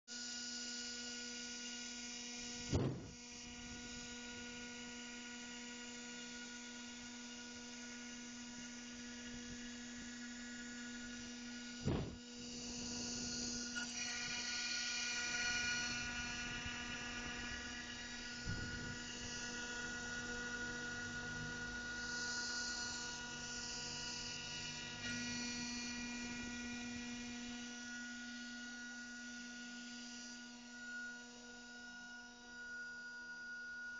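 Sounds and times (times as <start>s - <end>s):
machine spindle motor whine: 0.2s - 33.9s
sharp knocks: 2.7s - 3.2s, 11.8s - 12.2s.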